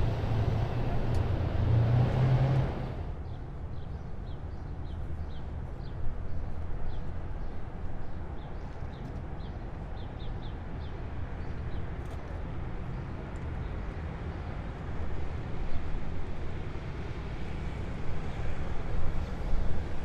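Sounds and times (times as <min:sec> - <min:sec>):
heavy vehicle engines rumbling: 0:00.0 - 0:03.2.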